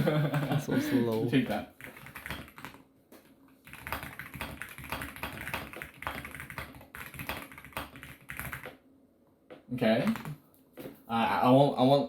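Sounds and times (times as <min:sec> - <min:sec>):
mechanical keyboard typing: 0:01.8 - 0:02.8, 0:03.6 - 0:08.8, 0:10.0 - 0:10.4.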